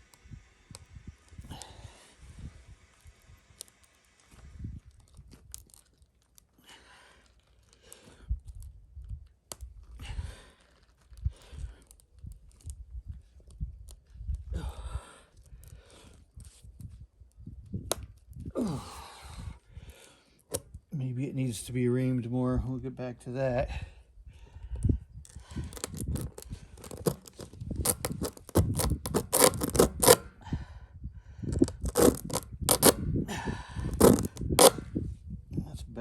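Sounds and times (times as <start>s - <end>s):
scraping and rustling: 25.3s - 30.3s, 31.5s - 33.0s, 33.9s - 34.9s
tool clicks and knocks on tire: 25.7s - 30.4s, 31.5s - 33.0s, 33.9s - 34.9s.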